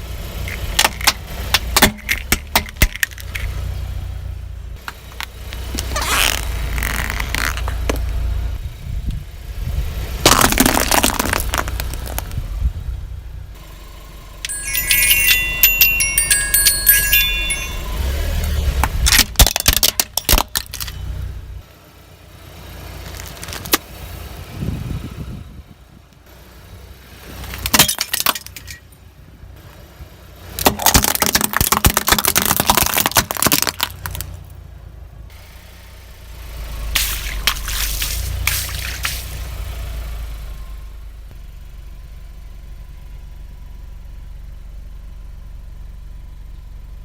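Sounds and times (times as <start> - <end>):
car engine hum: 0.0 - 47.0
tyres crushing brittle objects: 5.6 - 8.1, 10.2 - 12.4, 18.8 - 21.0, 30.6 - 34.4, 37.0 - 39.3.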